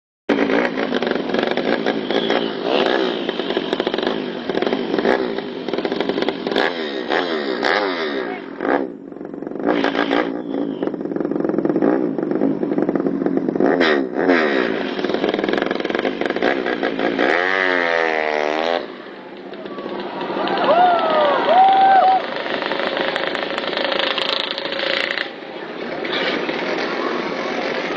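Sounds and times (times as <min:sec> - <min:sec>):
motorcycle engine revving: 0:00.3 - 0:27.9.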